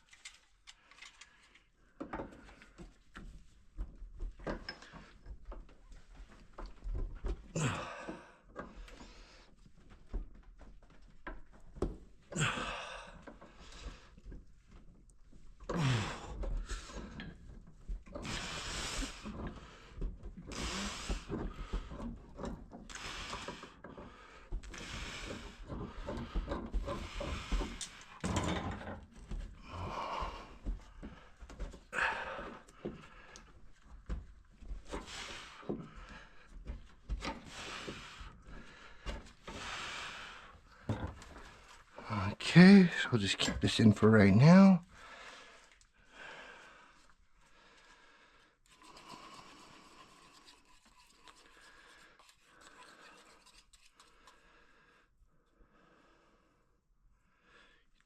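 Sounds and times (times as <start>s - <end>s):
wrench scraping and knocking on pipe: 19.2s - 29.6s.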